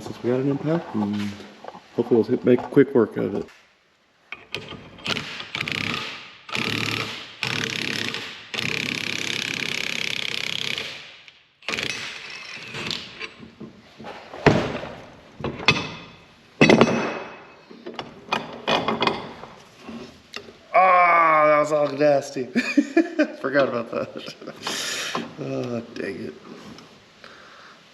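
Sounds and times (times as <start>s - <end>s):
metal clanks and knocks: 4.3s - 8.8s, 11.6s - 19.6s
impact wrench bursts: 4.4s - 13.3s.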